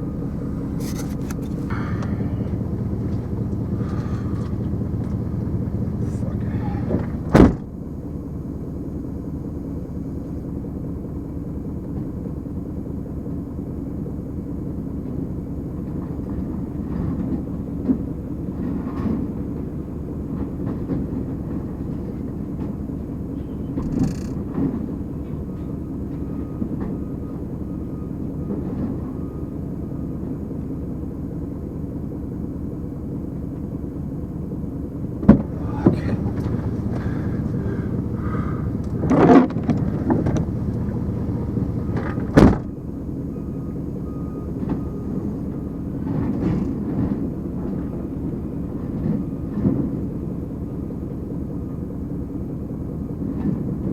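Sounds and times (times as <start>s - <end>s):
car crusher engine rumbling: 0.0s - 9.8s, 35.0s - 49.4s.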